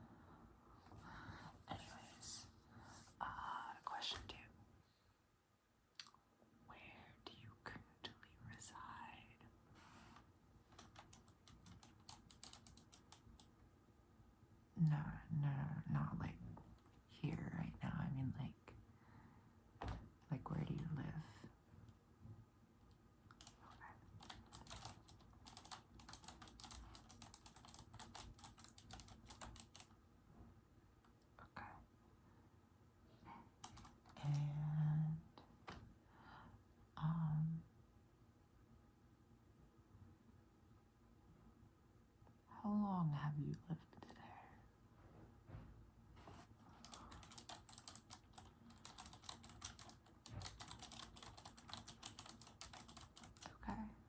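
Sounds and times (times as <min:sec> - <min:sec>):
mechanical keyboard typing: 0:10.7 - 0:13.5, 0:23.3 - 0:29.9, 0:33.6 - 0:34.4, 0:46.8 - 0:53.5.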